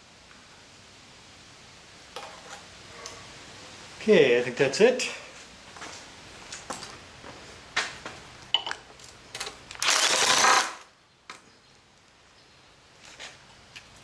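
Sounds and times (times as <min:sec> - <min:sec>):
metal tools clinking: 0:08.5 - 0:10.1.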